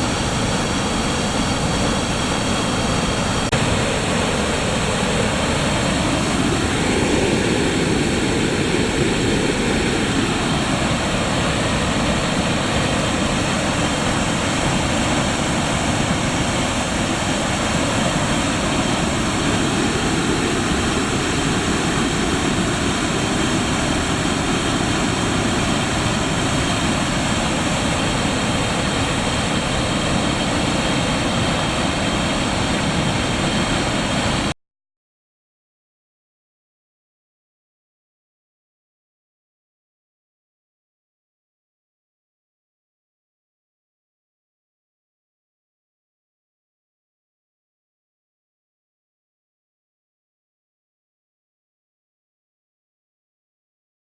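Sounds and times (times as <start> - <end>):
loud rush of water: 0.0 - 34.5.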